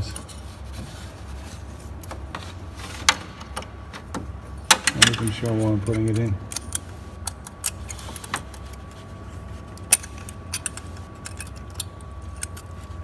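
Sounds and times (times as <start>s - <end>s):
metallic clicks of small parts: 4.7s - 8.8s, 9.8s - 12.8s.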